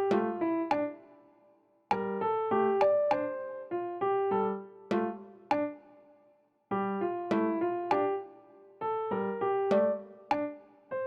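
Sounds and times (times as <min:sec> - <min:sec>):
gentle piano melody: 0:00.0 - 0:01.2, 0:01.9 - 0:05.8, 0:06.7 - 0:11.0.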